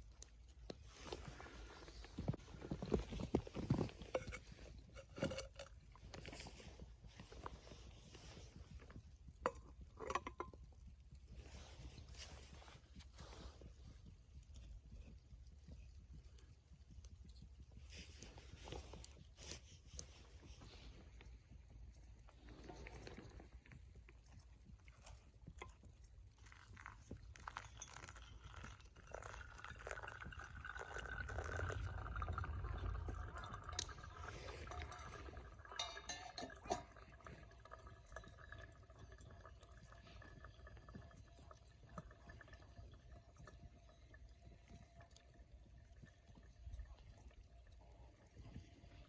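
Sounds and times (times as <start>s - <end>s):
hot water pouring and dripping: 0.0s - 49.0s
faint steady hum: 18.3s - 49.0s.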